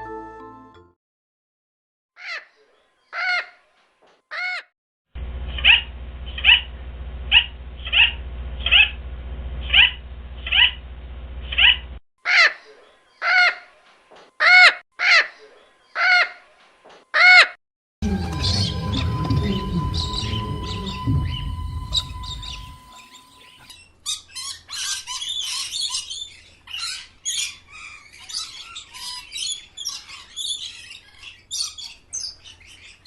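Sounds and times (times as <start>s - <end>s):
low hum: 5.2s - 12.0s, 18.0s - 23.7s
bird giving harsh calls: 18.1s - 23.8s.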